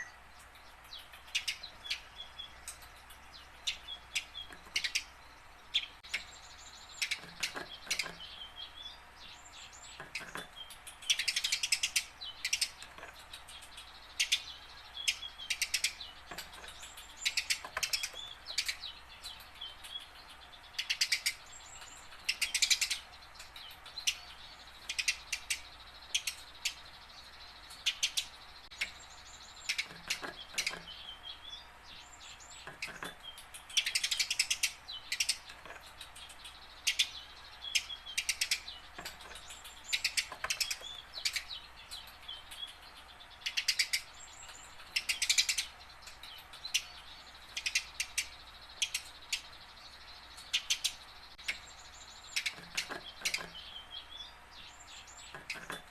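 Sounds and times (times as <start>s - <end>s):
sparrow chirping: 0.0s - 55.9s.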